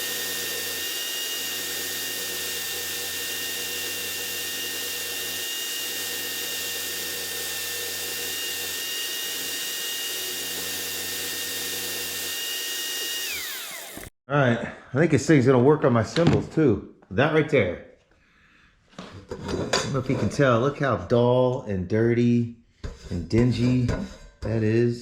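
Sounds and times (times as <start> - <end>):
power tool motor whining: 0.0 - 14.2.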